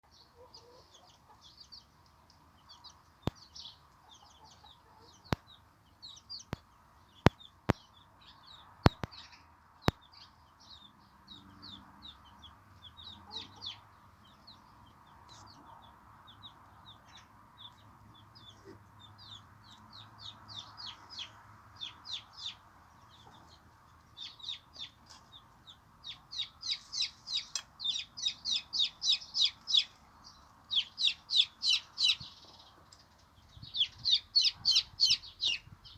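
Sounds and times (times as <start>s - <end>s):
chicks peeping: 0.1s - 35.9s
sharp clicks: 8.9s - 9.2s.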